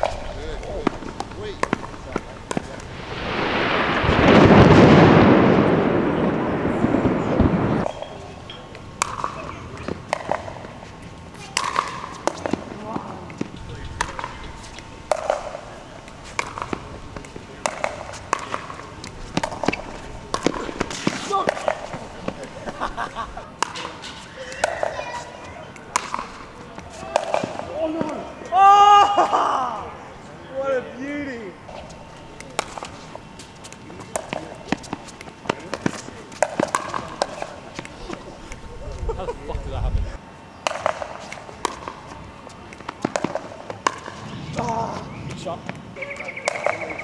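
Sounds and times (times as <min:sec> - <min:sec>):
paddles hitting plastic ball: 0:00.0 - 0:03.0, 0:09.0 - 0:10.8, 0:11.4 - 0:22.8, 0:25.8 - 0:28.3, 0:32.4 - 0:38.7, 0:40.6 - 0:44.7.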